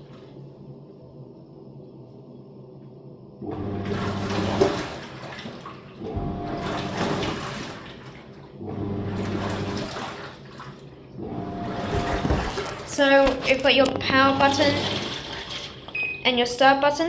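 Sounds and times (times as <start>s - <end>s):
washing machine churning water: 0.0s - 1.8s, 3.2s - 17.0s
motor hum: 6.0s - 10.1s, 11.0s - 16.1s.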